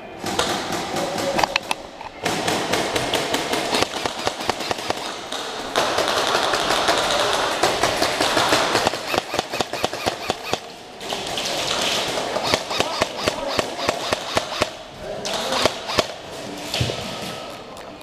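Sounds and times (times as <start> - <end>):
airsoft guns firing: 0.2 - 16.3.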